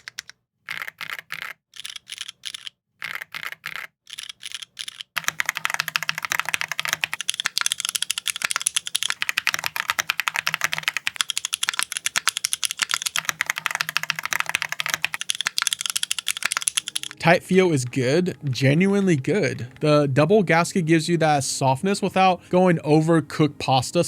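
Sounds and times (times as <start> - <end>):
typing on mechanical keyboard: 0.0 - 17.2.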